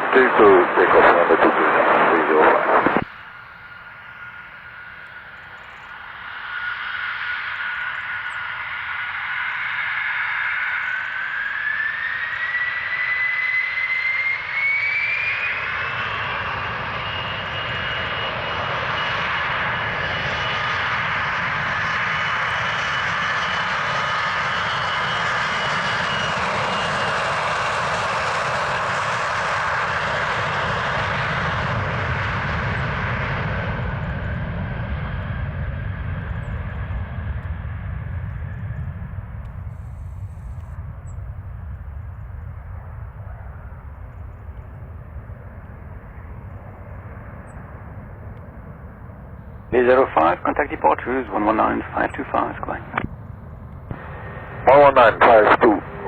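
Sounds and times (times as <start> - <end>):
jet engines spooling up: 0.0 - 56.0
low rumble: 50.4 - 56.0.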